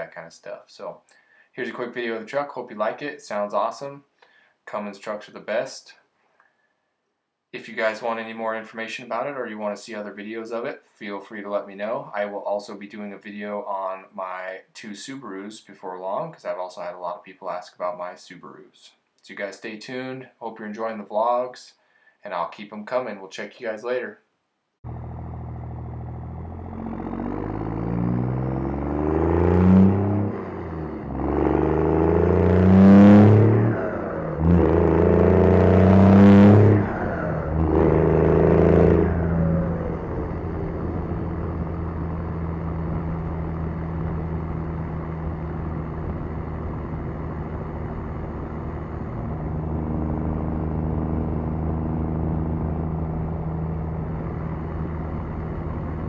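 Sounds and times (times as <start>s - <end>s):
diesel truck accelerating through gears: 24.8s - 56.0s.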